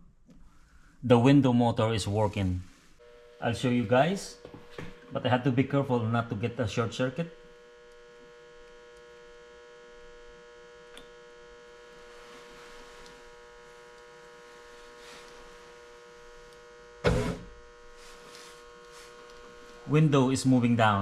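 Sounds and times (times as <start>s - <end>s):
electrical hum: 0.0s - 21.0s
loud knock: 17.0s - 17.5s.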